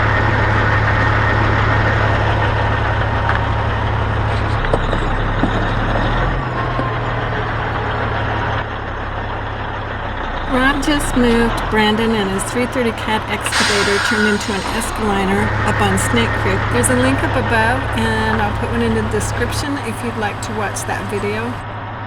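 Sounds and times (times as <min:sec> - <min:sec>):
truck diesel engine running: 0:10.5 - 0:21.6.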